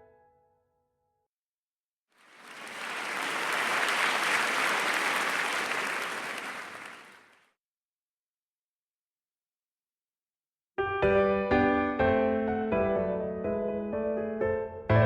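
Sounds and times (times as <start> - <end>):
audience applauding: 2.2 - 7.4.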